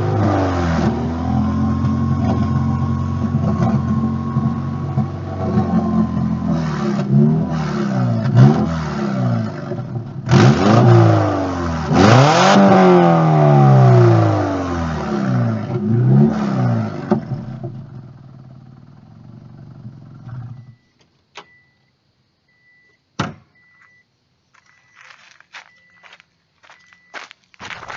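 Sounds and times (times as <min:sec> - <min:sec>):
car engine revving: 0:00.0 - 0:20.6
short high beeps: 0:23.6 - 0:27.3.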